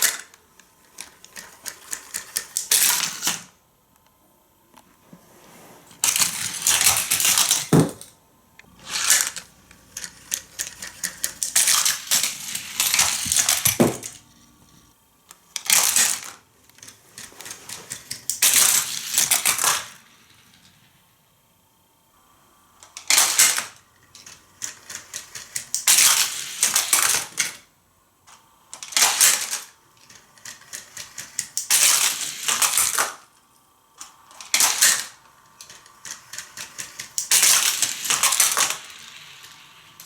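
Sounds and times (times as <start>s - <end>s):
toy cars rolling on plastic track: 0.0s - 3.6s, 6.0s - 8.1s, 8.7s - 14.4s, 15.3s - 21.0s, 22.8s - 27.7s, 28.3s - 33.4s, 34.0s - 40.0s.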